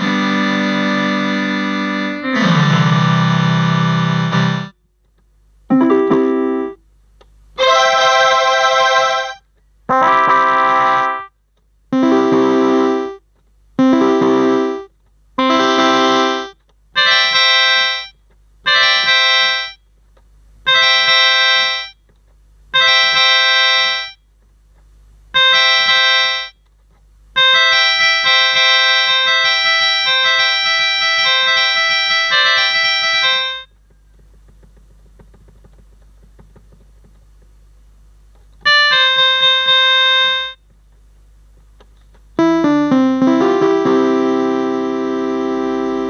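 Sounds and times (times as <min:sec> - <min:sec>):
electronic keyboard chords: 0:00.0 - 0:04.8, 0:05.7 - 0:06.8, 0:07.6 - 0:19.8, 0:20.6 - 0:22.0, 0:22.8 - 0:24.2, 0:25.3 - 0:26.6, 0:27.3 - 0:37.2, 0:38.6 - 0:40.6, 0:42.3 - 0:46.0.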